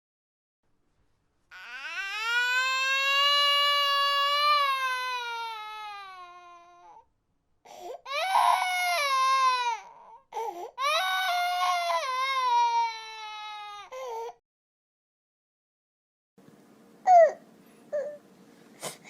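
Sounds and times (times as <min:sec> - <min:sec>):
baby crying: 0:01.5 - 0:07.0, 0:07.8 - 0:14.4, 0:17.1 - 0:18.2
baby catching breaths: 0:18.8 - 0:19.0.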